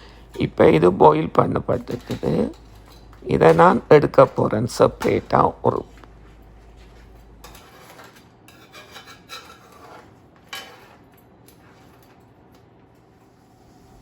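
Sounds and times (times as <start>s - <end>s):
utensil scraping a pot: 7.4s - 11.0s.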